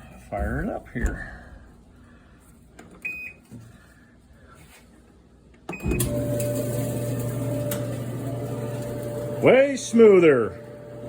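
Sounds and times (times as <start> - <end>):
dryer motor and drum humming: 5.7 - 11.0
dryer whine: 5.7 - 11.0.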